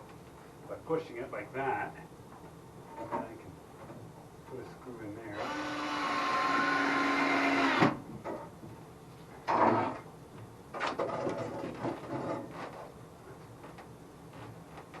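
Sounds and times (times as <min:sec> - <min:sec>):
power drill driving screw into wood: 0:05.4 - 0:08.0.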